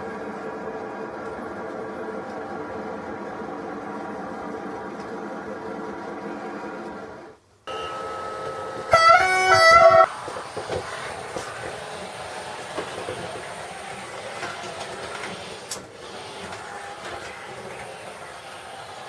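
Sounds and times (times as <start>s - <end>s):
train rolling with wheel clicks: 0.0s - 19.0s
steady high tone: 7.7s - 10.2s
train horn: 7.7s - 10.2s.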